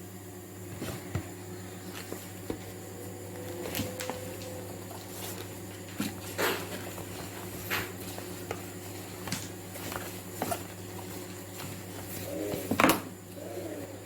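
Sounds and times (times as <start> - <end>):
low electrical hum: 0.0 - 14.0
faint clicks and rustles: 0.8 - 13.0.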